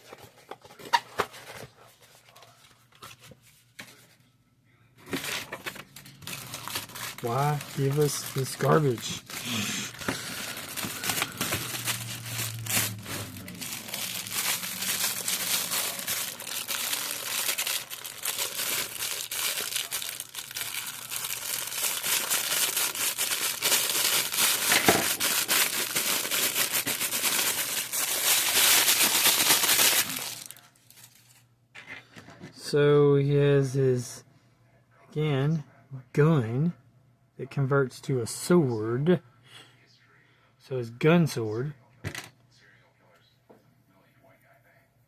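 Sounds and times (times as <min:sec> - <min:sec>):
plastic packaging crinkling: 0:05.1 - 0:31.4.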